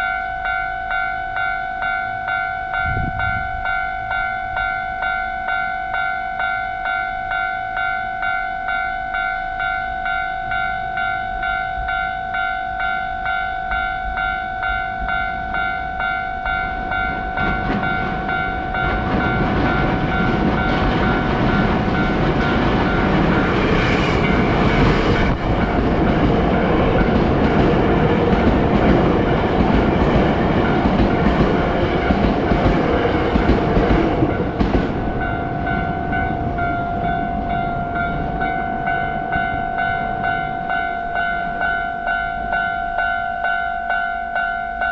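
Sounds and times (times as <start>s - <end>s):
level crossing bell ringing: 0.0s - 23.9s, 26.4s - 44.9s
train rumbling past: 0.0s - 44.9s.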